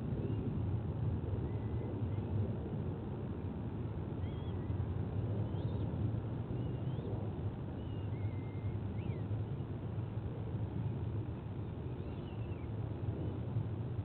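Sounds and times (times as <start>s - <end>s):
low background rumble: 0.0s - 14.0s
faint bird chirps: 4.2s - 4.8s, 5.4s - 5.9s, 7.8s - 9.3s, 11.9s - 12.8s.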